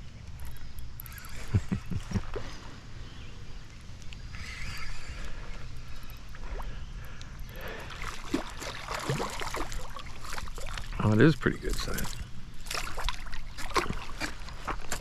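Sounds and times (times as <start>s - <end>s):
water sloshing and splashing: 5.3s - 15.0s.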